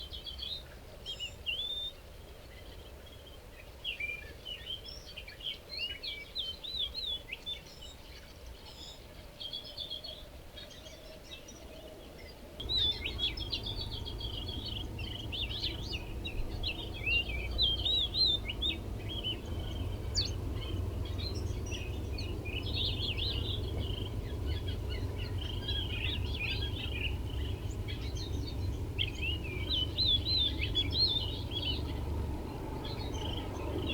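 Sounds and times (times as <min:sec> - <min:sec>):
small birds chirping: 0:00.0 - 0:33.9
low background rumble: 0:12.6 - 0:33.9.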